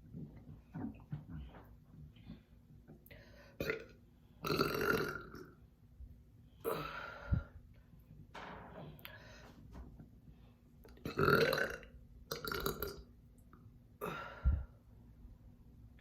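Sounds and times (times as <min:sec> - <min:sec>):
deep burps: 0:03.6 - 0:05.6, 0:06.6 - 0:07.5, 0:11.0 - 0:13.1.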